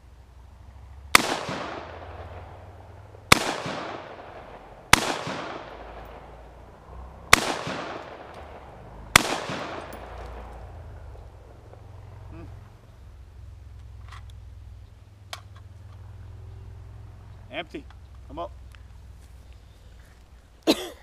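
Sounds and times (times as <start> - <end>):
rifle shots echoing: 1.1 - 11.8.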